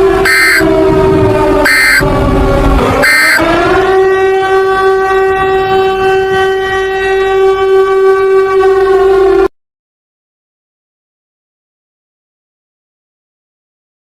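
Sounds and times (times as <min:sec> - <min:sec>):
steady horn-like tone: 0:00.0 - 0:09.5
brief electronic burst: 0:03.0 - 0:03.4.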